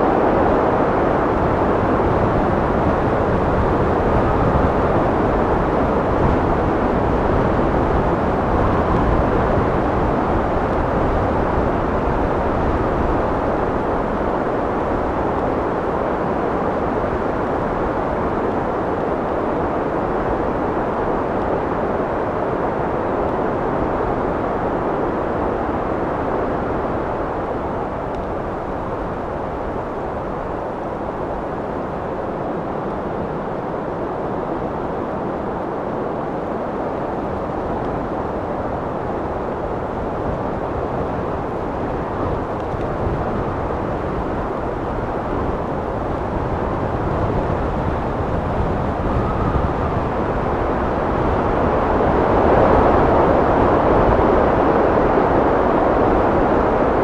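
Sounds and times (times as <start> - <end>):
wind blowing: 21.6 - 57.0.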